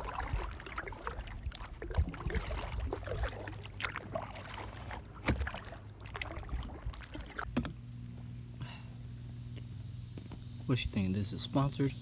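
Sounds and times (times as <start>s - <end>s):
paddle splashing in water: 0.0s - 7.7s.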